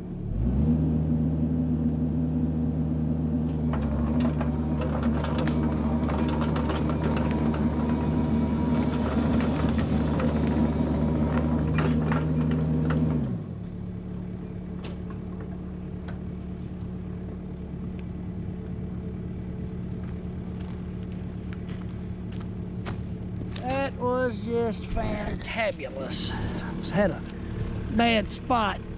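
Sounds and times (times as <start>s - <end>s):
excavator diesel engine: 0.0s - 28.9s
cracks and clatter: 3.5s - 13.3s.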